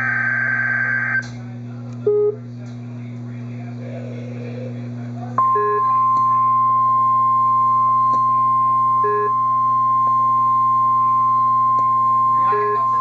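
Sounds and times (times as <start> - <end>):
steady alarm tone: 0.0 - 1.2, 5.4 - 13.0.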